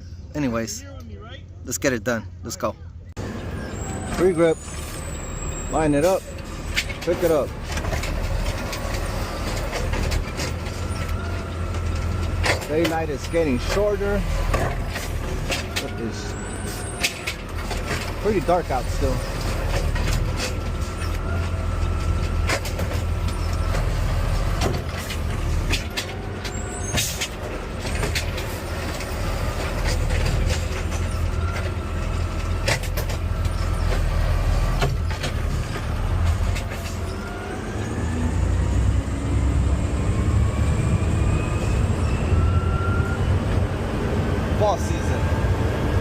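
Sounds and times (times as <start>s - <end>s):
diesel truck engine running: 2.4s - 46.0s
clunks: 3.2s - 38.8s.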